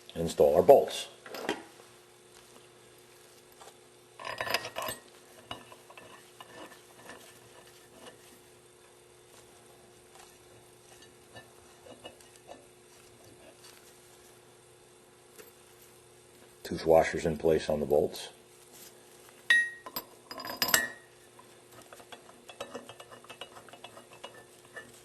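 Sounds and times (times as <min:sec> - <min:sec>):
small metal parts clinking: 0:04.2 - 0:07.2, 0:19.5 - 0:21.0.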